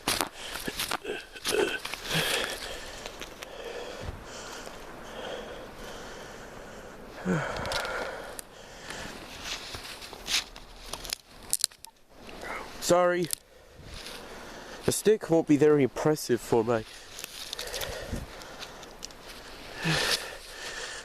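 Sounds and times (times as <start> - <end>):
person breathing hard: 0.1 - 9.3, 16.9 - 21.0
person sniffing: 19.7 - 21.0.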